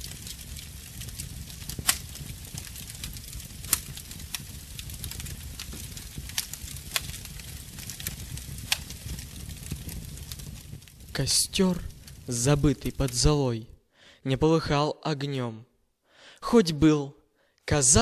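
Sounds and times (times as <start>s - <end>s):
campfire rumbling and crackling: 0.0s - 13.4s.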